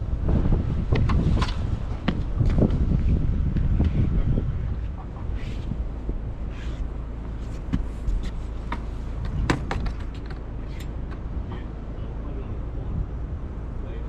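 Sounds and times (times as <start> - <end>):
wind rumble on microphone: 0.0 - 14.0
sharp clicks and knocks: 7.6 - 11.6.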